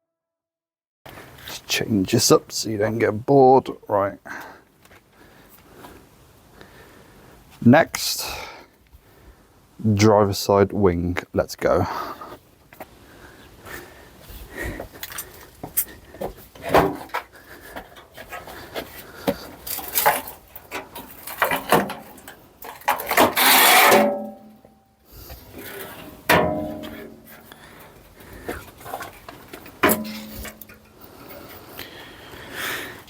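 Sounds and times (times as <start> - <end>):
car wing clicks and knocks: 16.6 - 17.3, 19.2 - 24.4, 26.2 - 27.4, 29.8 - 30.8
loud metal scrape: 22.9 - 24.6
ringing knock: 26.3 - 27.3, 29.8 - 30.7.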